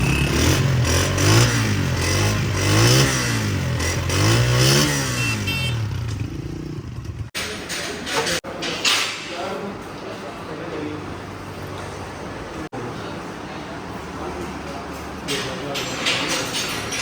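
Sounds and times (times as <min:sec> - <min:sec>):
motorcycle engine revving: 0:00.0 - 0:07.4.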